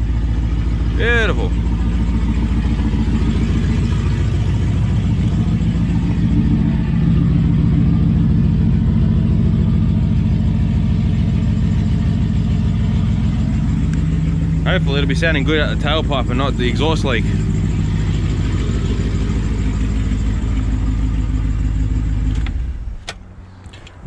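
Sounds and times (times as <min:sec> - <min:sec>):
car engine idling: 0:00.0 - 0:24.0.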